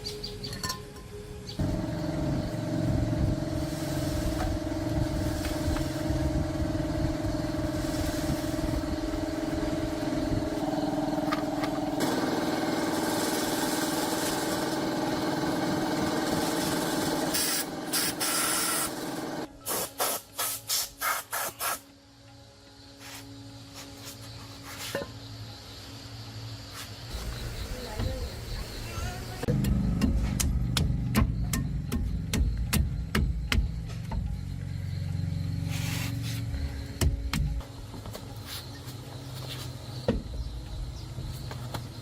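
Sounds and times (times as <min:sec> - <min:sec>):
short engine bursts: 0:01.6 - 0:19.5
small petrol engine running: 0:01.6 - 0:19.5.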